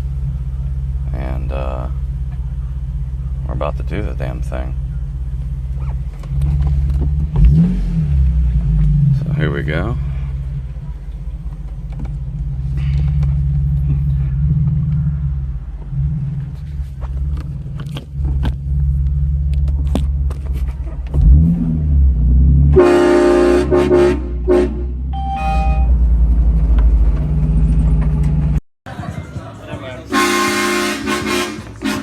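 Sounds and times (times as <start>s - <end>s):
car engine rumbling: 0.0s - 32.0s
train horn chord: 22.8s - 26.0s, 30.1s - 32.0s.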